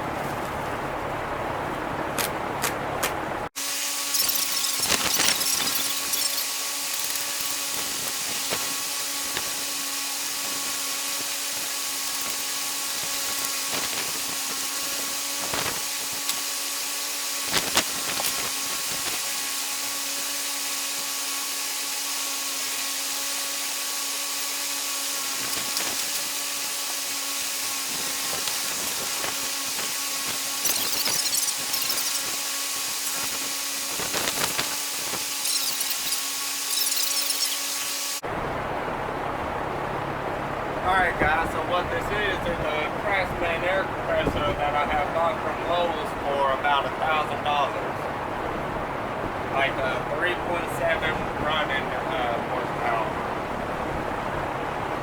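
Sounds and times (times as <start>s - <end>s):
machine hum: 0.0s - 45.6s
packaging scraping and rustling: 4.1s - 16.6s, 17.4s - 19.4s, 25.2s - 38.2s.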